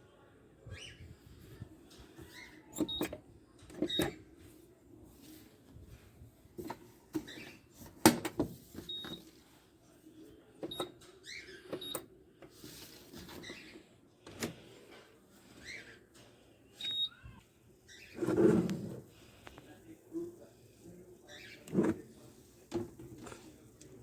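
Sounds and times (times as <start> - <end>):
faint chirps: 15.4 - 18.2.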